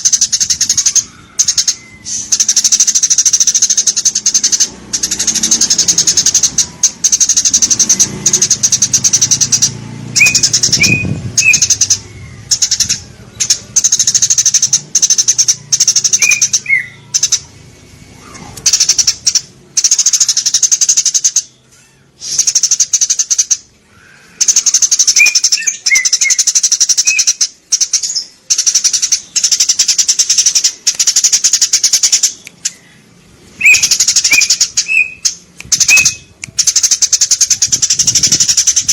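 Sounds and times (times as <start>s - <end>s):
sparrows chattering: 0.0s - 38.9s
short bird chirps: 1.0s - 2.7s.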